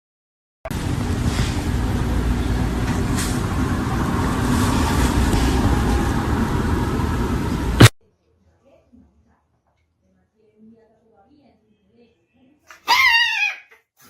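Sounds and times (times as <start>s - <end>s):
loud low rumble with hiss: 0.7s - 7.9s.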